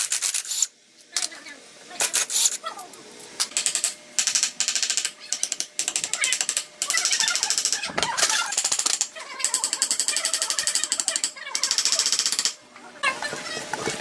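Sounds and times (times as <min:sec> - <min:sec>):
power tool rattling: 0:07.1 - 0:08.7.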